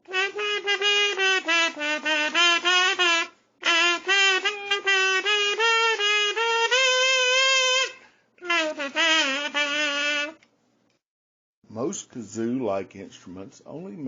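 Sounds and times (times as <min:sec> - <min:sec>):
kazoo playing buzzy notes: 0:00.0 - 0:10.5.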